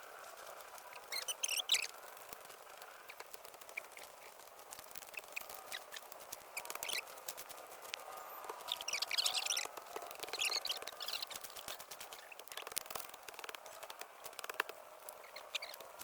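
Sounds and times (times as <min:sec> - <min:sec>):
birds chirping and twittering: 0:00.0 - 0:16.0
faint clicks: 0:00.2 - 0:16.0.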